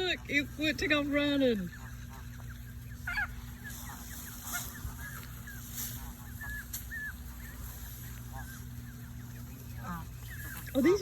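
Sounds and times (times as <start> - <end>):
goslings peeping: 0.0 - 11.0
low hum: 0.0 - 11.0
goose call: 0.7 - 11.0.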